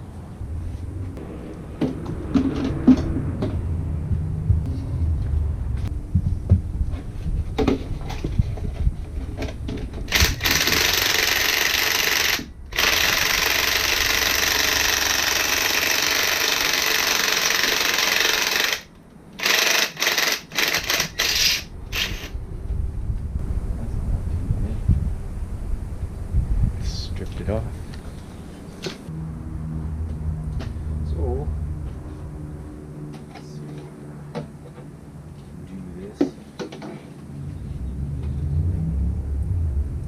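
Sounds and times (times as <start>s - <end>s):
knocks and clanks on engine: 1.7s - 3.7s
pneumatic air tool: 10.1s - 22.3s.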